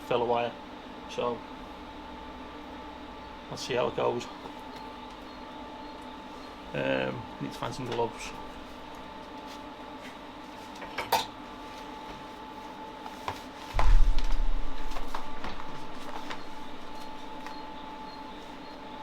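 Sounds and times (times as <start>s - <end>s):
machine hum: 0.0s - 10.4s, 13.7s - 19.0s
heavy low thump: 13.8s - 16.0s.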